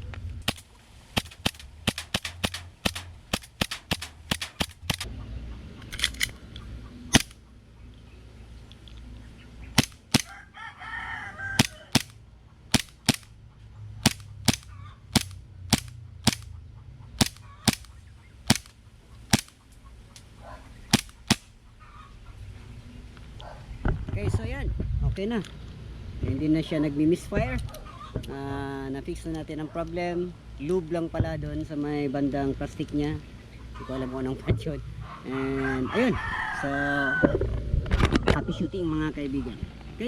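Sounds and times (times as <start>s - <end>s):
airsoft pistol shots: 0.5s - 5.1s, 7.1s - 7.4s, 9.8s - 10.4s, 11.6s - 13.3s, 14.0s - 16.5s, 17.2s - 19.6s, 20.9s - 21.5s.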